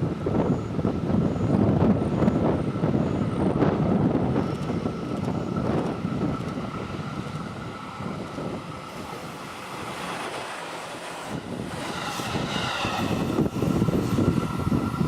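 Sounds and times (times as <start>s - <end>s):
train wheels rumbling and clattering: 0.0s - 15.0s.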